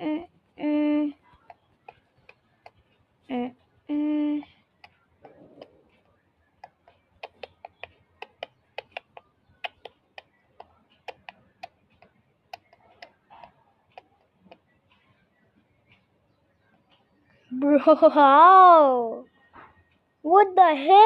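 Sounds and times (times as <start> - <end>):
sharp irregular clicks: 6.6 - 15.0.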